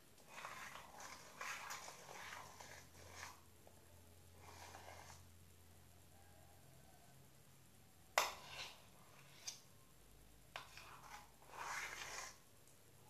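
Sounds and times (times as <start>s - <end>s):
slime being stirred: 0.2s - 3.4s, 4.3s - 5.3s, 8.2s - 9.6s, 10.6s - 12.4s.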